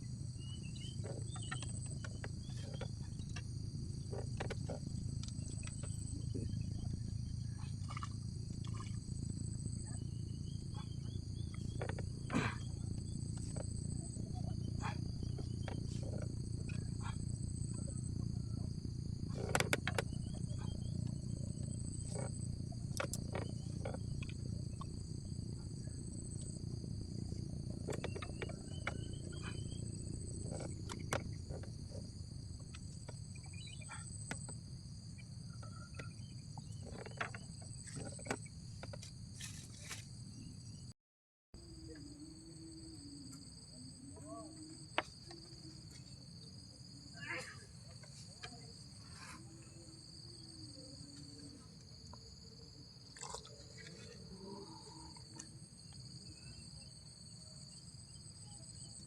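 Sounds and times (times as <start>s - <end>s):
insect chorus buzzing: 0.0s - 40.9s, 41.6s - 59.0s
low constant rumble: 0.0s - 40.9s.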